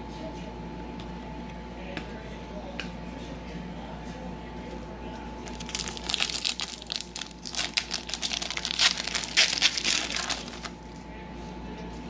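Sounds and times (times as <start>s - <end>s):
foil wrapper crinkling: 4.6s - 11.1s.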